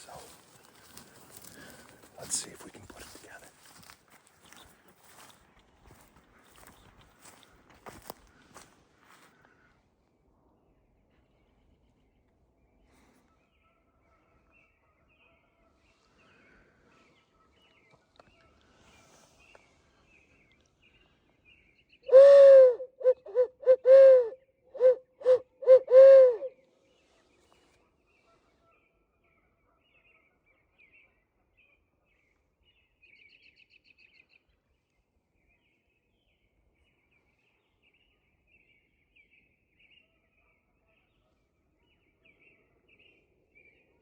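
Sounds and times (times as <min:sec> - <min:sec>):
owl call hoots: 0:22.1 - 0:26.6.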